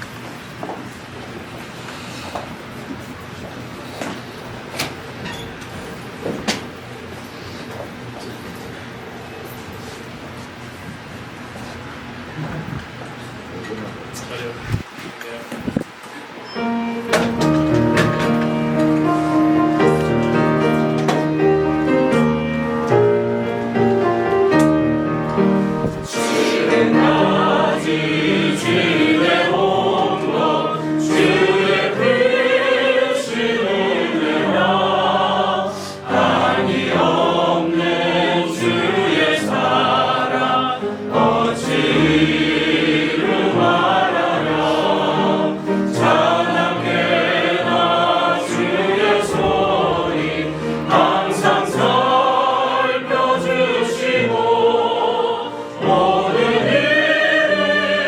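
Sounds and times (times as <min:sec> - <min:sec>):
piano accompaniment: 0:16.5 - 0:58.0
mixed choir singing a hymn: 0:17.0 - 0:58.0.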